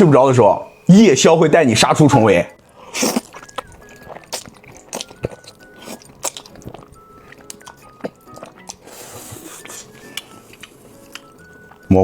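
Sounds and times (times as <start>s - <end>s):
soft background music: 0.0s - 12.0s
person chewing food: 2.5s - 12.0s.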